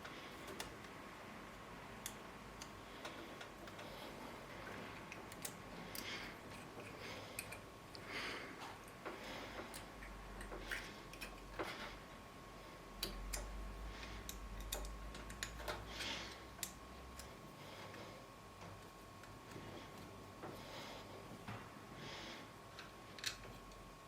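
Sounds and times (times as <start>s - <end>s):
faint high hum: 0.0s - 24.0s.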